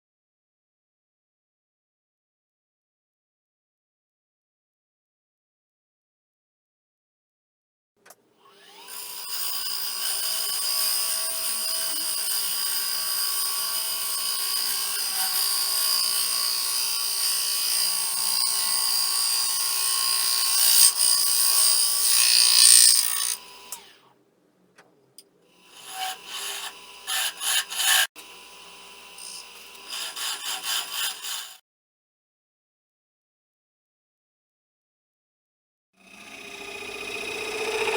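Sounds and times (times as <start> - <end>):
power tool cutting wood: 8.4 - 24.0, 25.6 - 31.6, 36.0 - 37.9.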